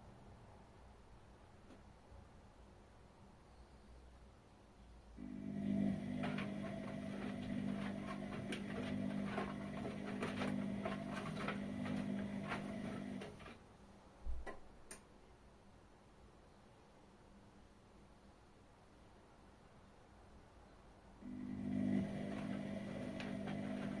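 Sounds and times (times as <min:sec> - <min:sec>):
washing machine running: 0:05.2 - 0:13.6, 0:21.2 - 0:24.0.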